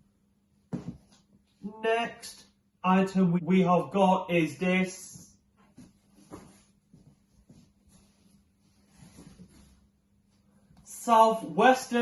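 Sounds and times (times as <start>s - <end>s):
fabric rustling: 5.6s - 10.8s.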